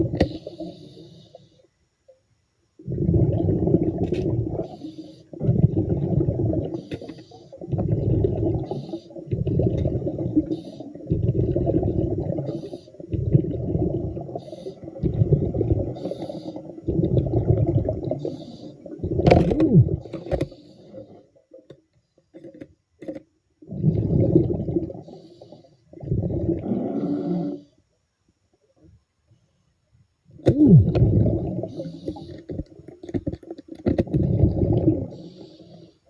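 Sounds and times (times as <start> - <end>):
exhaled bubbles underwater: 0.0 - 1.3, 2.8 - 21.7, 23.6 - 27.7, 30.4 - 35.8
faint breathing hiss: 0.0 - 19.2, 19.9 - 23.0, 23.6 - 30.4, 31.2 - 32.9, 34.2 - 36.0.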